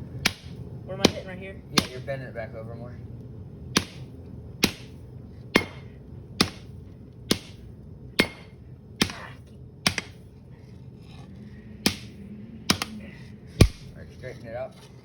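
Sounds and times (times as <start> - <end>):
hammer striking steel on anvil: 3.8 - 6.7, 7.3 - 7.6, 8.2 - 10.2, 11.8 - 13.0.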